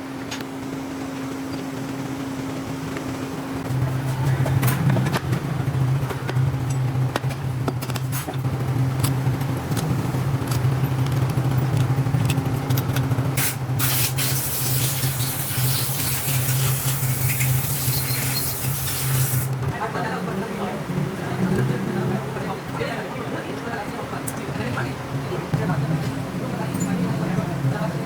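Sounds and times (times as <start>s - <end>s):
loud hiss: 13.4s - 19.5s.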